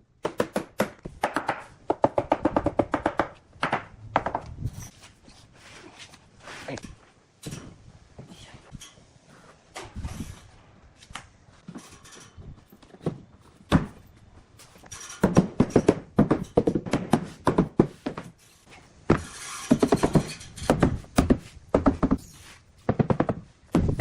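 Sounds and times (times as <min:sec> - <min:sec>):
wooden knocks and thunks: 0:12.5 - 0:14.2, 0:15.0 - 0:18.3, 0:19.1 - 0:22.2, 0:22.8 - 0:24.0.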